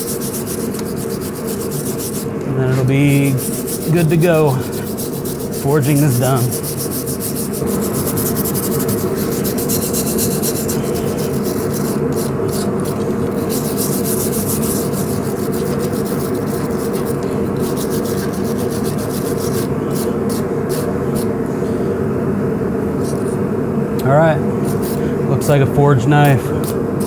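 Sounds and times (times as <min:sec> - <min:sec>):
wire brush scratching steel: 0:00.0 - 0:20.1.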